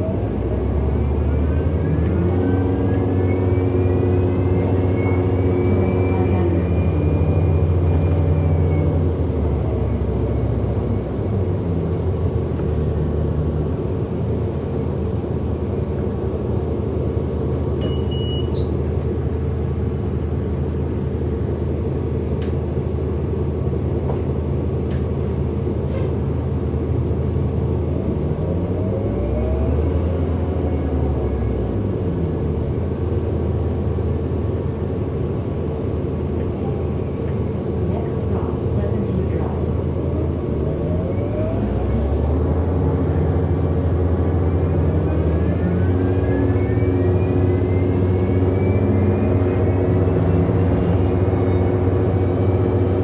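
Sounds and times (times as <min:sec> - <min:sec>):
bus rumbling from inside: 0:00.0 - 0:53.0.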